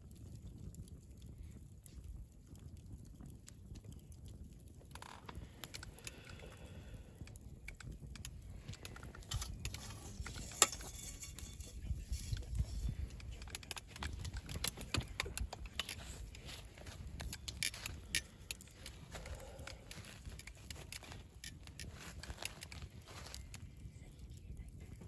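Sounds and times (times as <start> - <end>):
campfire crackling and popping: 0.0 - 25.0.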